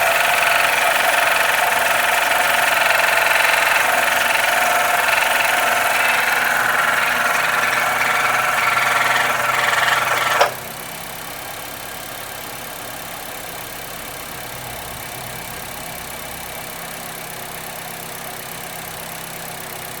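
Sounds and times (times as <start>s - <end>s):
loud abnormal engine noise: 0.0s - 10.6s
car engine idling: 0.0s - 14.3s.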